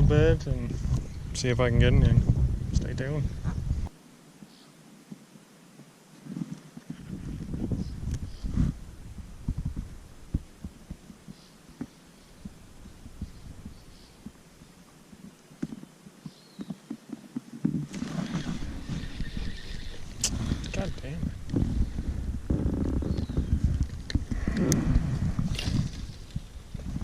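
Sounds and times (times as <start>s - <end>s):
rush of noise: 20.1s - 26.0s.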